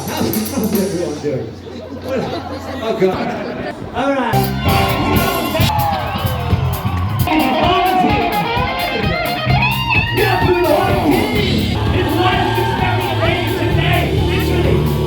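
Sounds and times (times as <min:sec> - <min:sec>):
electric guitar: 0:04.4 - 0:11.9
live band playing: 0:04.4 - 0:15.0.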